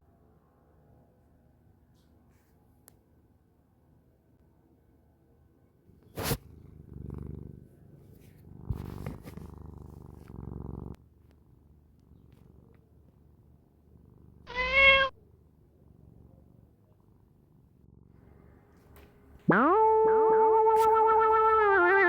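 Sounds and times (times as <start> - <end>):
cat purring: 5.8 - 18.5, 19.5 - 22.0
cat meowing: 14.5 - 15.2.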